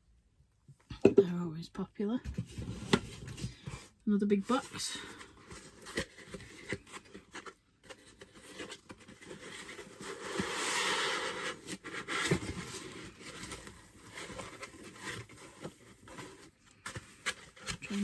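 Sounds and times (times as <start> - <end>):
cardboard taps and scrapes: 2.2 - 3.8, 5.5 - 18.0
packaging rustling slide: 5.1 - 18.0.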